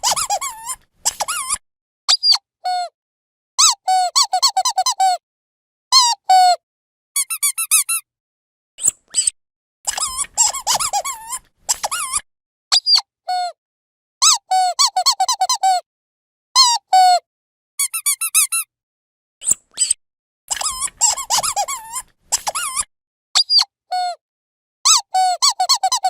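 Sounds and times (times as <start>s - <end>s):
rubber squeaky toy squeaking: 0.0s - 2.9s, 3.6s - 5.2s, 6.0s - 6.6s, 7.2s - 8.1s, 8.8s - 13.6s, 14.2s - 15.8s, 16.6s - 17.2s, 17.8s - 18.7s, 19.4s - 24.2s, 24.9s - 26.0s.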